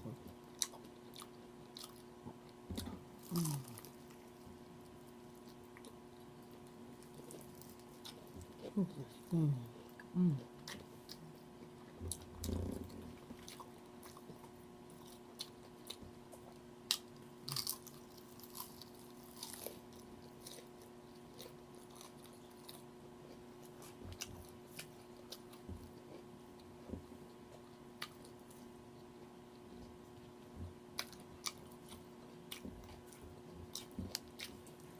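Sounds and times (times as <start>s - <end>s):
person crunching and chewing food: 0.0s - 34.9s.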